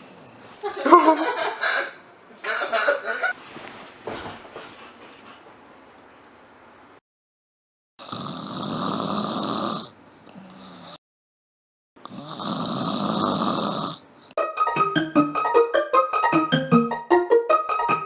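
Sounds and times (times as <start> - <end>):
plucked bouncy music: 14.4 - 18.0.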